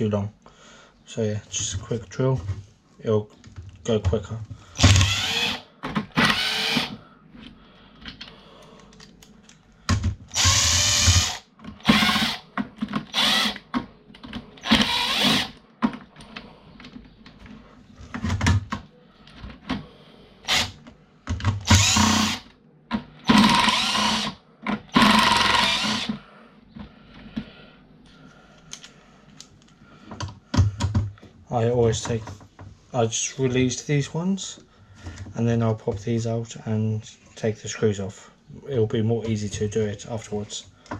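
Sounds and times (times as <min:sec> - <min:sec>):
drill removing screws: 0:04.8 - 0:07.0, 0:10.3 - 0:12.4, 0:13.0 - 0:13.7, 0:14.6 - 0:15.6, 0:20.4 - 0:20.8, 0:21.5 - 0:22.4, 0:23.2 - 0:26.2.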